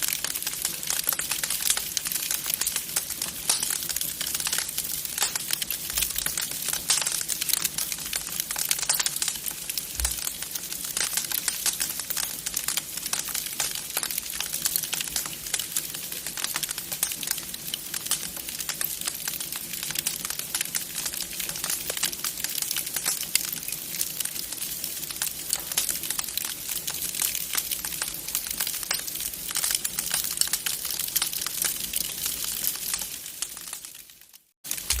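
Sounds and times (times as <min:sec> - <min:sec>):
wood fire crackling: 0:00.0 - 0:35.0.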